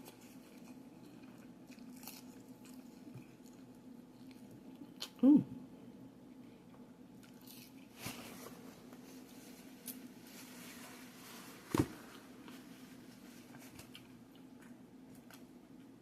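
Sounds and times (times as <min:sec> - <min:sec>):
soft wet chewing: 0:00.0 - 0:05.2, 0:06.2 - 0:08.1, 0:12.0 - 0:16.0.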